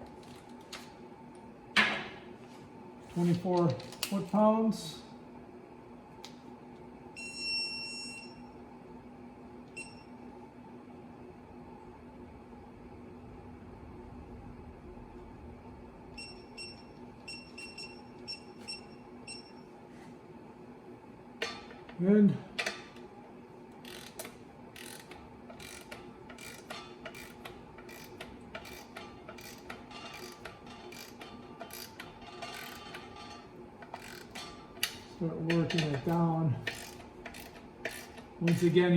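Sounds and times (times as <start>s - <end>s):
torque wrench click: 23.8s - 32.8s, 35.7s - 38.7s.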